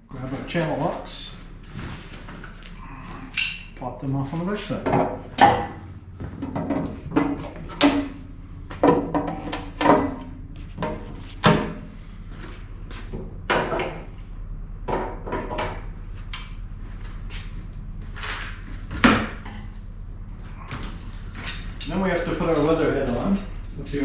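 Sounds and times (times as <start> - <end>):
metal knocks and clanks: 3.3 - 12.0, 13.0 - 14.2, 14.8 - 16.6, 20.6 - 24.0.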